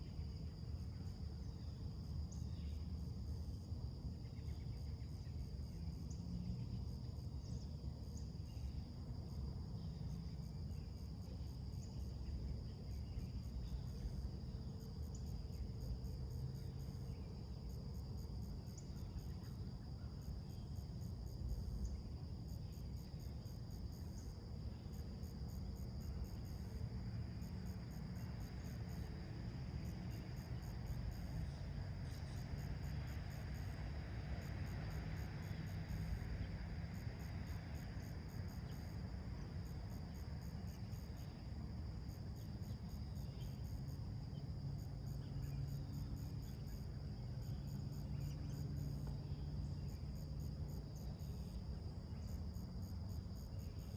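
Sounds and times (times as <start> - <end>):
insects chirping: 0.0 - 53.9.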